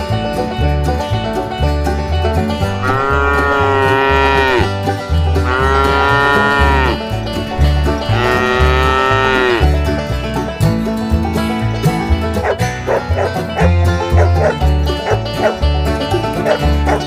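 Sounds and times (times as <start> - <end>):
banjo bluegrass music: 0.0 - 17.0
cow mooing: 2.6 - 9.8.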